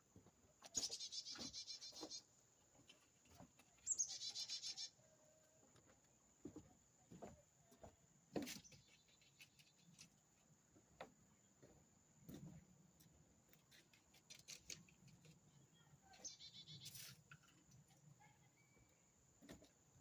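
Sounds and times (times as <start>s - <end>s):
faint bird calls: 3.8s - 5.6s.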